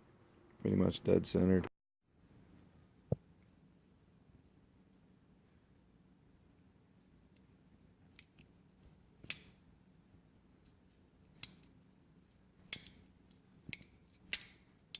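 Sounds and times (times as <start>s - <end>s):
folding knife clicks: 11.4s - 11.7s, 13.7s - 14.7s.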